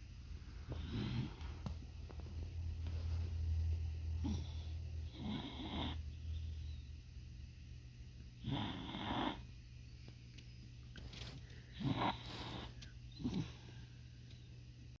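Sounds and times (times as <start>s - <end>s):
dog snoring: 0.6s - 1.6s, 4.1s - 6.2s, 8.4s - 9.5s, 11.7s - 13.7s.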